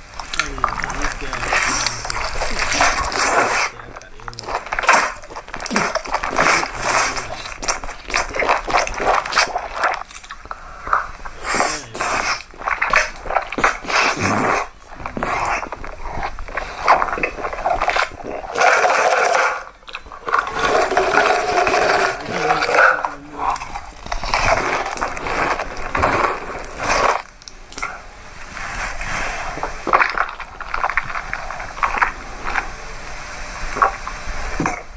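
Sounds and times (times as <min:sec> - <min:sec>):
person chewing crunchy food: 0:00.0 - 0:34.9
wet mouth smacks: 0:00.2 - 0:18.8.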